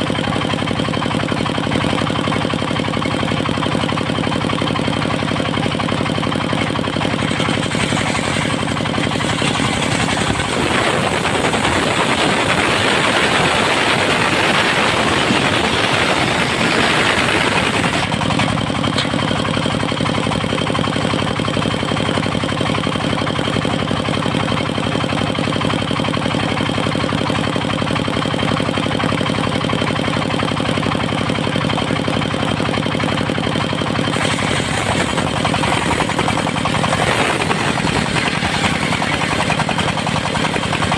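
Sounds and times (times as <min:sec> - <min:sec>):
sawmill engine running: 0:00.0 - 0:40.9
saw blade cutting log: 0:06.4 - 0:19.3, 0:34.0 - 0:40.9.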